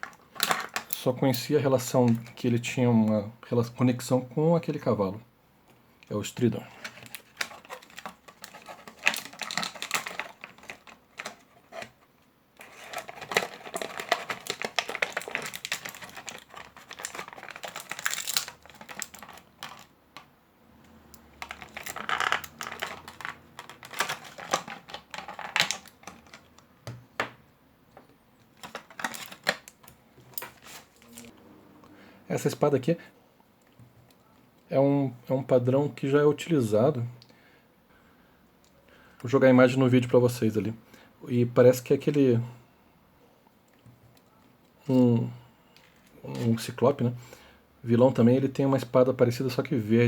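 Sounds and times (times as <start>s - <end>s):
plastic and card crinkling: 6.1s - 20.3s, 21.1s - 27.3s, 28.4s - 31.3s.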